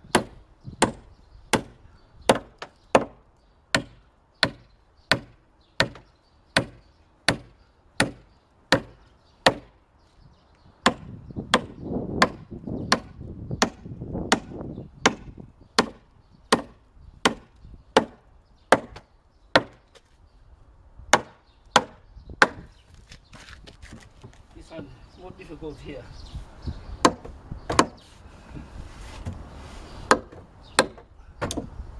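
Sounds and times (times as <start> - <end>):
hammer blows on wood: 10.9 - 19.8.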